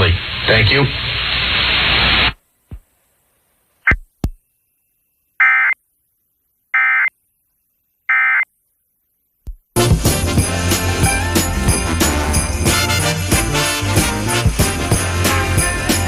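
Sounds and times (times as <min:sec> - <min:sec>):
holiday song with sleigh bells: 0:09.8 - 0:16.0.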